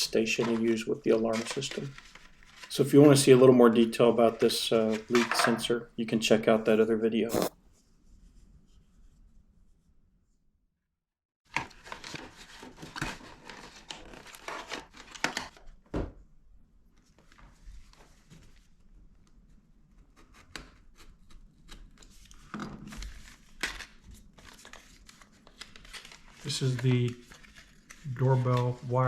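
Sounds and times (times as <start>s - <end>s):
cardboard box rustling: 7.3s - 7.5s.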